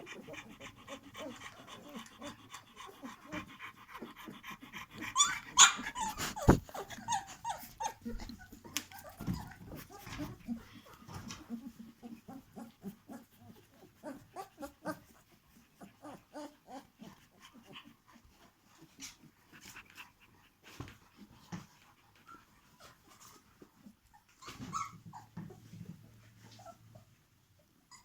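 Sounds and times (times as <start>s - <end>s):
puppies whimpering and squeaking: 4.3s - 15.2s, 24.1s - 25.7s.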